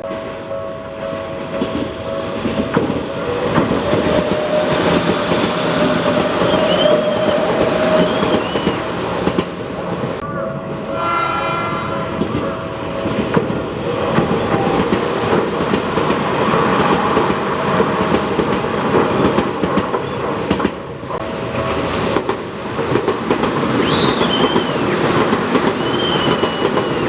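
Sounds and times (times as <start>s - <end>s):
train wheels clattering over joints: 1.2s - 10.2s
high wheel squeals: 3.3s - 9.1s, 23.7s - 25.0s, 25.6s - 27.0s
train horn blast: 10.2s - 15.0s.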